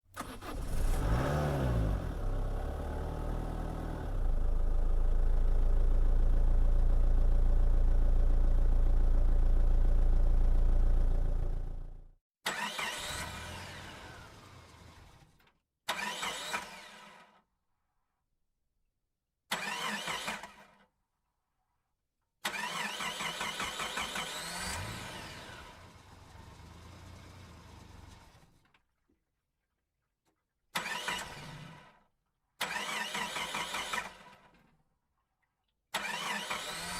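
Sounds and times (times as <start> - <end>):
engine cranking and starting: 0.1 - 2.4, 12.5 - 17.3, 19.5 - 20.8, 22.4 - 26.2, 30.8 - 32.0, 32.6 - 34.6, 36.0 - 36.9.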